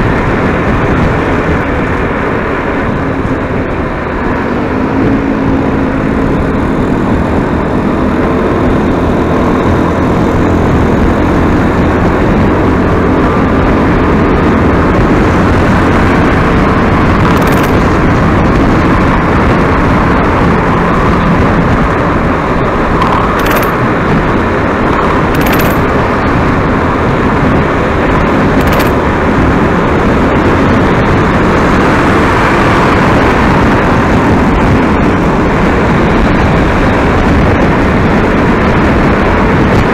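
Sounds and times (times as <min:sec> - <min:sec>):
vehicle engine and road noise: 0:00.0 - 0:39.9
short sharp clicks: 0:28.6 - 0:29.0.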